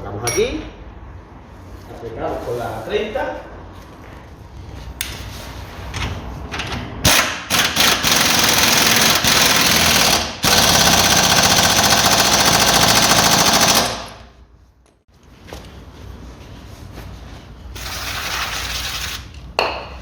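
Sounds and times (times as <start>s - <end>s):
pneumatic wrench hammering: 7.0s - 14.2s.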